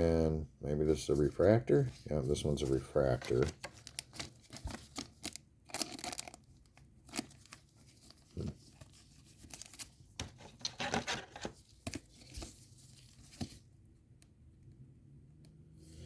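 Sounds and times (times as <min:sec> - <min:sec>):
trading cards rustling: 0:01.1 - 0:13.6.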